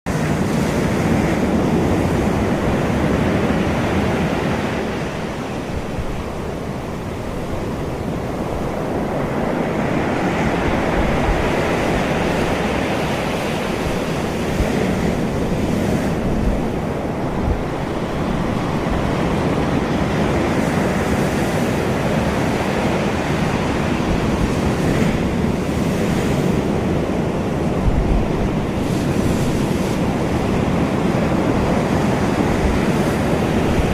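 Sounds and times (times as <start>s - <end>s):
ocean waves washing in: 0.1s - 33.9s.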